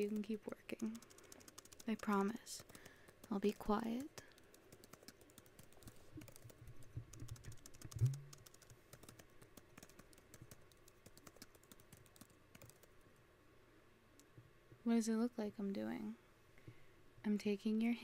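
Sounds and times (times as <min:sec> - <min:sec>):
keyboard key clicks: 0:00.0 - 0:12.9.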